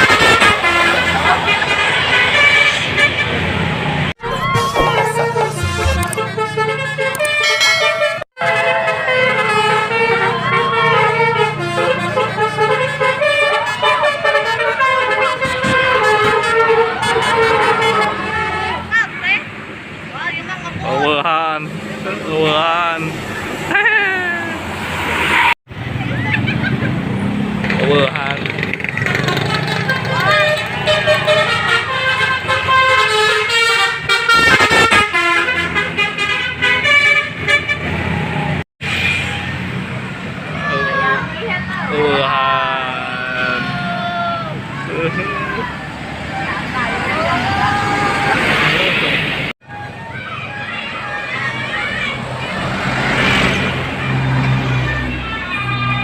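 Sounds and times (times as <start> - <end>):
musical bus horn playing a tune: 0.1 - 3.6, 4.2 - 18.9, 29.2 - 38.0.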